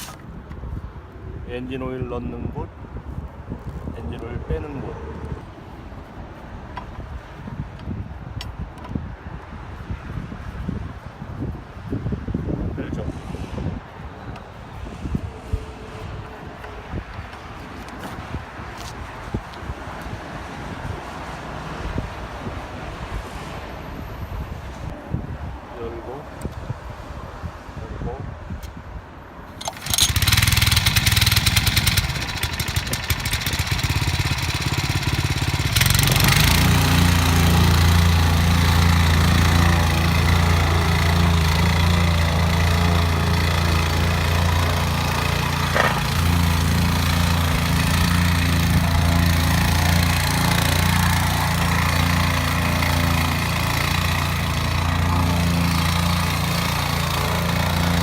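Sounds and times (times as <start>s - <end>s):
plate compactor engine running: 29.6s - 58.0s.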